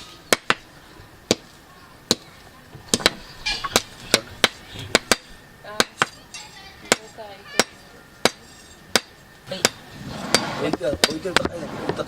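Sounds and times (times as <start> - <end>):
hammer striking metal: 2.9 - 11.2.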